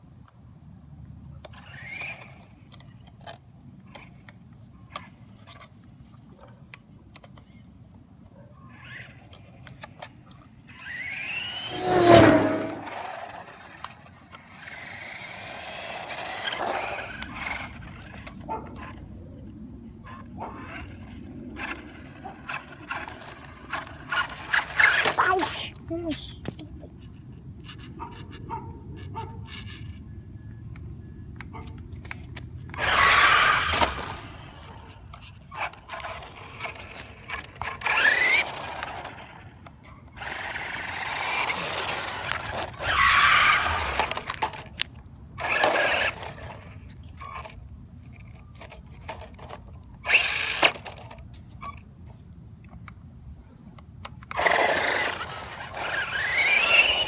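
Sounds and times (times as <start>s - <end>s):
electric motor whining: 10.7s - 18.3s, 32.7s - 35.0s, 35.9s - 39.5s, 40.2s - 44.5s, 54.4s - 57.0s.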